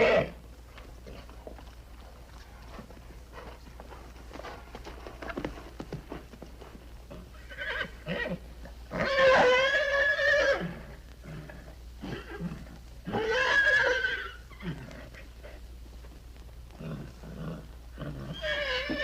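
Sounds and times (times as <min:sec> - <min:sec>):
horse whinnying: 0:00.0 - 0:00.4, 0:07.4 - 0:15.0, 0:18.0 - 0:19.0
soft horse sounds: 0:00.0 - 0:19.0
steady low hum: 0:00.0 - 0:19.0.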